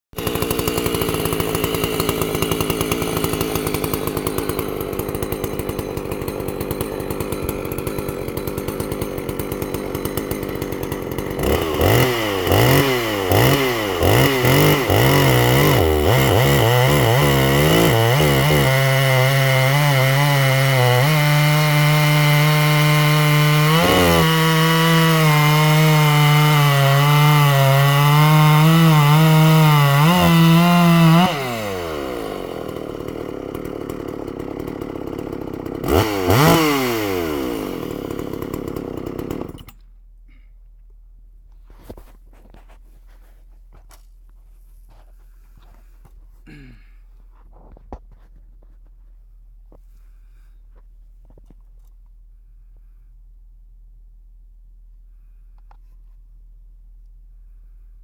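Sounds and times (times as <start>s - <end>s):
chainsaw idling and revving: 0.2s - 40.7s, 44.6s - 48.2s.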